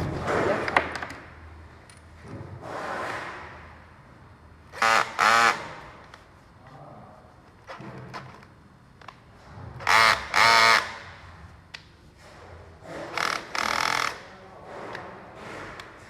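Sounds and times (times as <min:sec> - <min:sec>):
electric drill motor bursts: 0:04.8 - 0:05.8, 0:09.9 - 0:11.0, 0:13.2 - 0:14.2.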